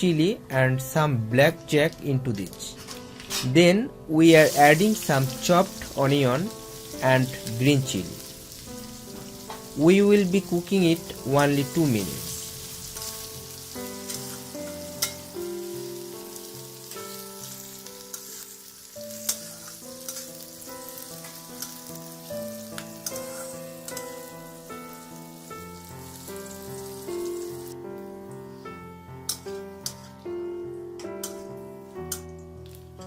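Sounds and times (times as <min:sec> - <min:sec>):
background music: 0:00.0 - 0:33.0
onion frying in hot oil: 0:04.3 - 0:27.8.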